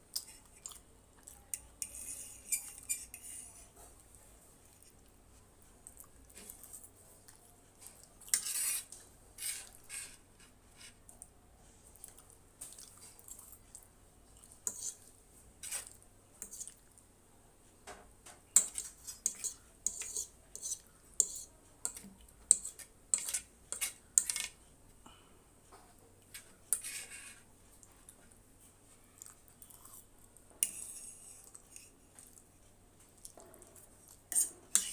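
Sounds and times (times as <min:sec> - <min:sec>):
cutlery clinking and scraping dish: 0:18.6 - 0:24.6, 0:34.3 - 0:34.9.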